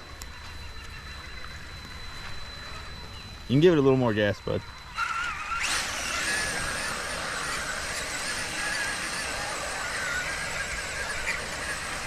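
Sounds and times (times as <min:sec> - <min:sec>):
electric motor whining: 0:04.7 - 0:12.0.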